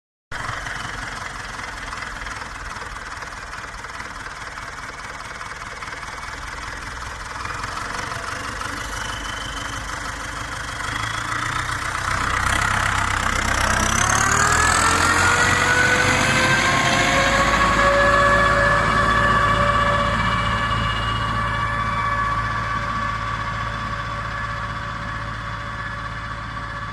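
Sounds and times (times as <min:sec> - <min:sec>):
tractor diesel engine running: 0:00.3 - 0:26.9.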